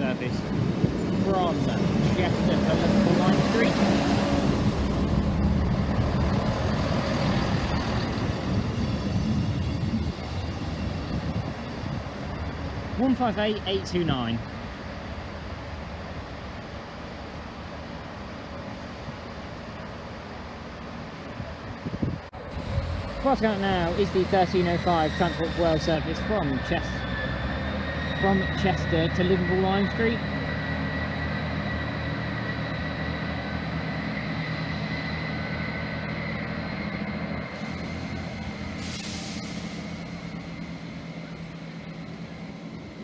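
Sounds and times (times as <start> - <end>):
wind noise: 0.0 - 16.6, 21.1 - 24.4
train diesel engine running: 0.0 - 43.0
thin high tone: 23.3 - 43.0.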